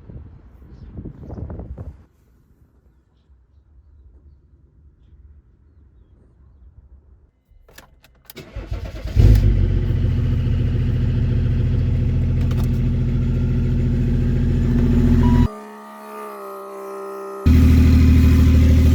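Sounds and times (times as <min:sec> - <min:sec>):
car engine starting: 0:07.6 - 0:15.5, 0:17.5 - 0:18.9.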